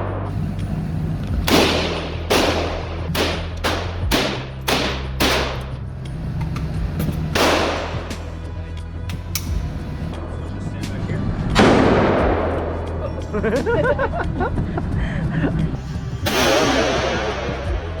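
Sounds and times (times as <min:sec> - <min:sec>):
gunshots echoing indoors: 0:01.4 - 0:05.8, 0:07.3 - 0:08.2.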